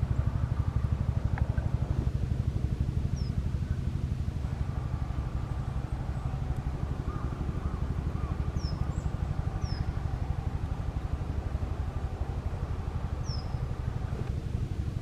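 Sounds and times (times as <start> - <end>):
steady low rumble: 0.0 - 15.0
songbird chirps: 5.4 - 10.4, 13.1 - 13.8.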